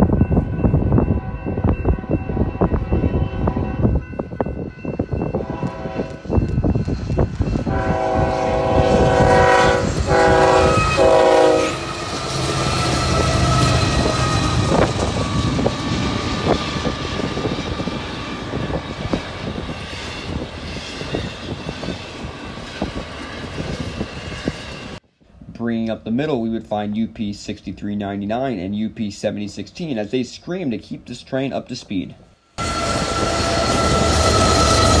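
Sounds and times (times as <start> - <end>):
train wheels rumbling and clicking: 0.0 - 9.1, 11.7 - 25.0
locomotive engine drone: 0.0 - 25.0, 32.6 - 35.0
train air horn blasts: 1.1 - 4.0, 5.3 - 6.5, 7.4 - 14.8.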